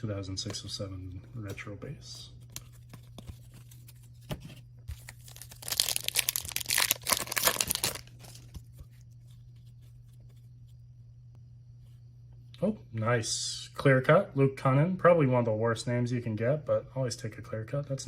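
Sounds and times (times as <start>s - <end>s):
steady low hum: 0.0s - 18.0s
wrapper crinkly ripping: 5.0s - 8.7s.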